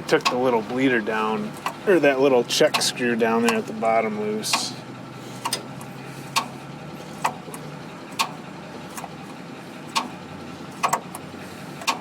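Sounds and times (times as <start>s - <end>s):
steady low hum: 0.0s - 12.0s
hand pump clicks: 0.1s - 0.8s, 1.6s - 1.8s, 2.7s - 3.8s, 4.5s - 4.7s, 5.4s - 6.6s, 7.2s - 7.6s, 8.2s - 9.2s, 9.9s - 10.2s, 10.8s - 12.0s.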